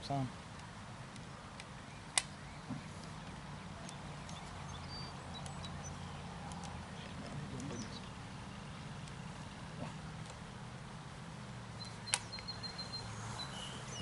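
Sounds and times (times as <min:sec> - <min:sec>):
sharp click: 0:00.6 - 0:02.3, 0:11.8 - 0:12.5.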